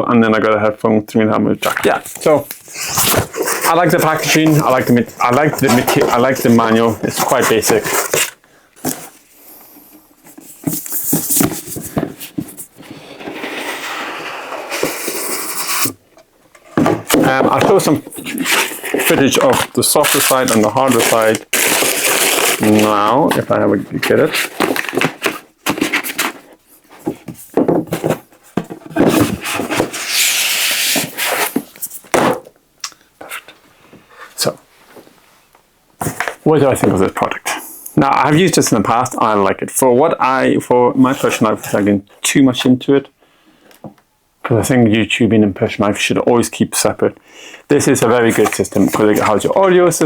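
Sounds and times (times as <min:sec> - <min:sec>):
paper packaging rustling: 0:01.6 - 0:16.0, 0:16.6 - 0:32.2, 0:47.8 - 0:50.0
object scraping slide: 0:12.8 - 0:15.9
objects knocking on hard surface: 0:16.7 - 0:18.0, 0:27.0 - 0:29.4.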